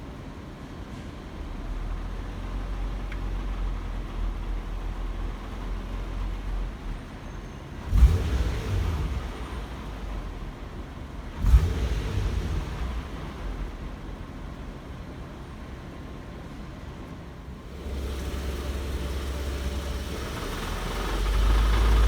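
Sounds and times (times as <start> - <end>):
car engine idling: 17.3 - 22.0
exhaust rattle: 17.5 - 22.0.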